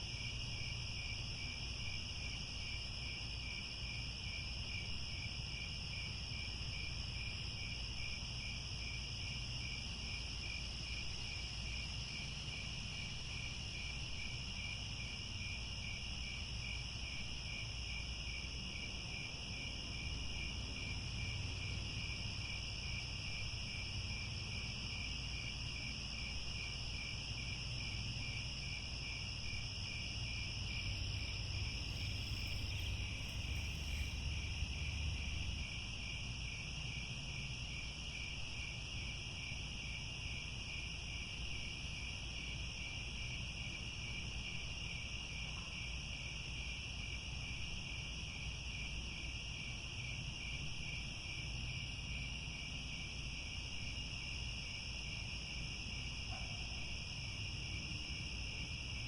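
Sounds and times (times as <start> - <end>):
crickets chirping: 0.0 - 59.0
low background rumble: 29.6 - 36.5.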